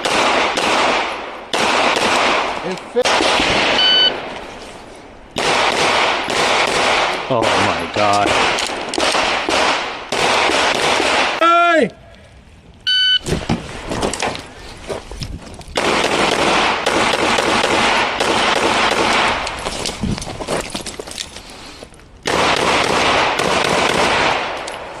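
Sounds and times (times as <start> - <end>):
pistol firing rapid shots: 0.0 - 3.8, 5.4 - 11.4, 15.8 - 19.4, 22.3 - 24.6.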